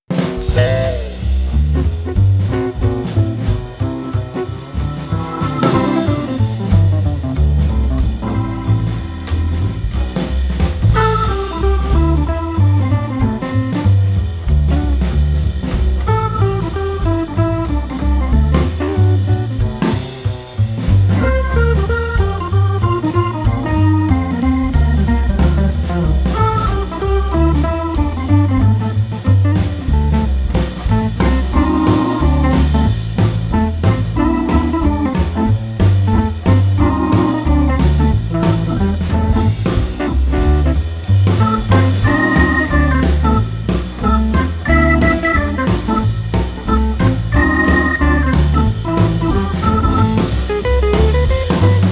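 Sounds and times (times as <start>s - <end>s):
bass: 0.0s - 51.9s
drum kit beat: 0.0s - 51.9s
upbeat jazz instrumental: 0.0s - 51.9s
guitar: 0.2s - 13.8s, 16.0s - 51.9s.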